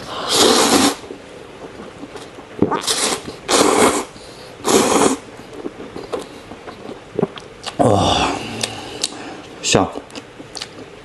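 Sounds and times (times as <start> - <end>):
man slurping noodles: 0.0 - 9.2.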